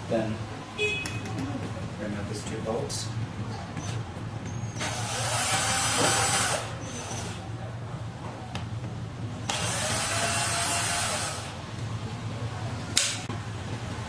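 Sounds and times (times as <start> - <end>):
power screwdriver whine: 4.8 - 7.4, 9.5 - 11.5.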